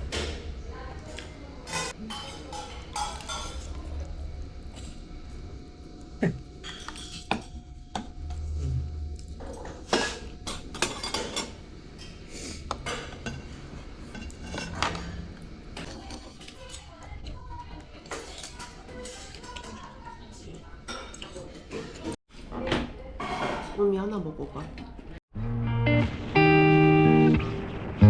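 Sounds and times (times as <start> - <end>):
dishes and cutlery clinking: 1.6 - 3.8, 6.6 - 8.1, 9.4 - 20.0, 20.8 - 22.2.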